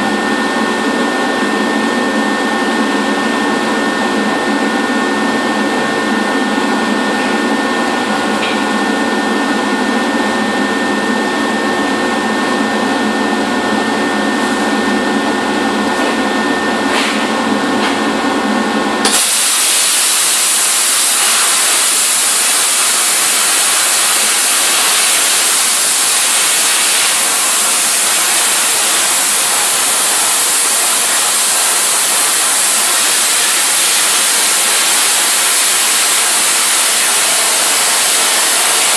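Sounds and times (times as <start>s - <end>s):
plasma torch hissing: 19.0s - 38.9s.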